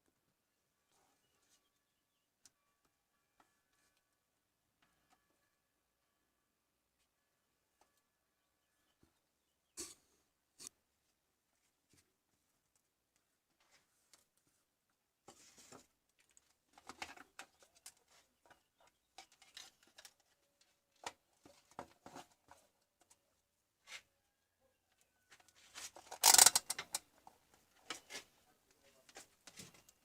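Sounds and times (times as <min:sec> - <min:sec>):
objects being handled: 0:11.6 - 0:24.1, 0:25.0 - 0:30.0.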